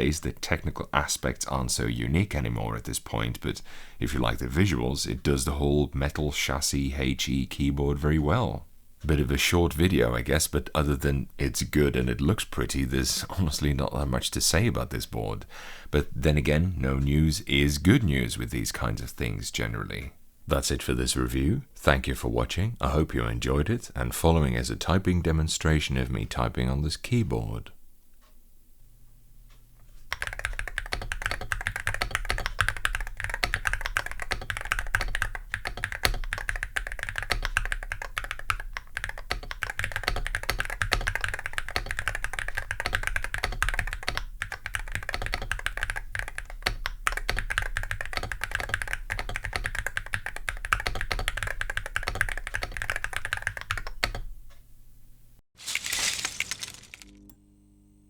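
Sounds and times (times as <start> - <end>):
fast keyboard typing clacks: 30.1 - 54.3.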